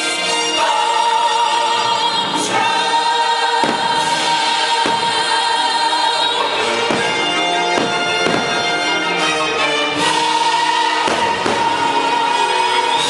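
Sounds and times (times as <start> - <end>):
choir singing held notes: 0.0 - 13.0
orchestral music: 0.0 - 13.0
dull thumps: 6.8 - 9.0.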